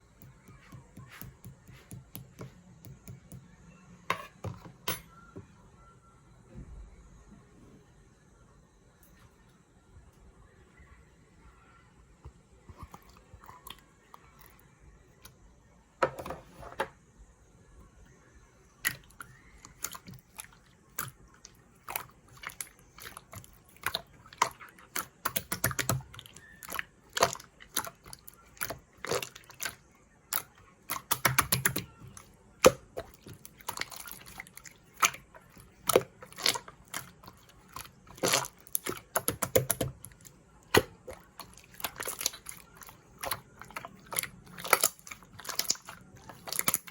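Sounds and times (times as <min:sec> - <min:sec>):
slime squished by hand: 0:18.8 - 0:46.9.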